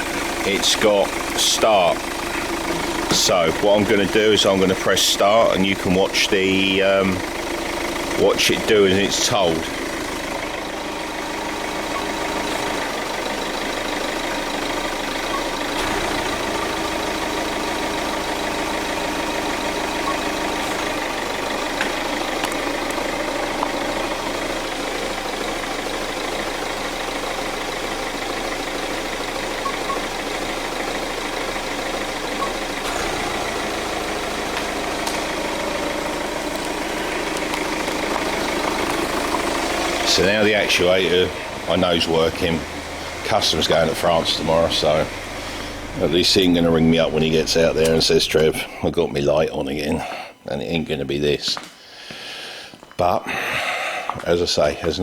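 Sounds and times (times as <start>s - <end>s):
diesel engine idling: 0.0s - 55.0s.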